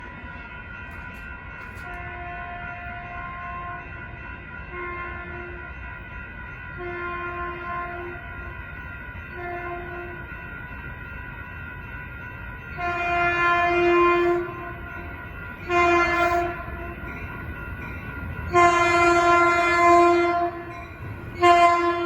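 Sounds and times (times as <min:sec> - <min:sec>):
locomotive horn blasts: 0:01.8 - 0:03.9, 0:06.8 - 0:08.3, 0:09.3 - 0:10.2, 0:12.8 - 0:14.8, 0:15.6 - 0:16.8, 0:18.5 - 0:20.8, 0:21.4 - 0:22.0.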